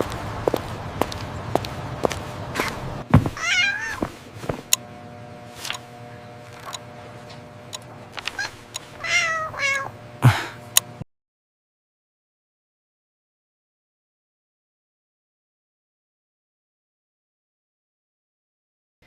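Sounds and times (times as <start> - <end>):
cat meowing: 3.4 - 4.1, 8.3 - 9.9.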